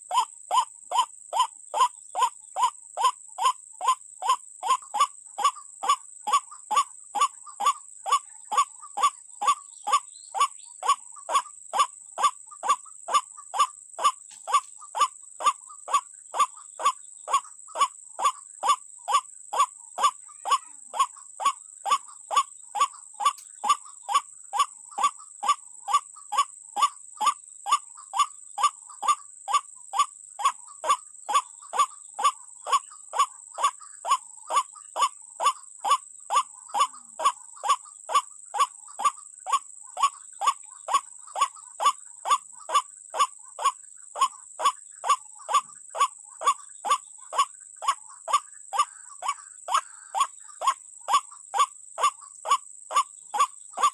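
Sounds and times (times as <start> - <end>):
waterhen calling: 0.0 - 29.6, 30.4 - 53.9.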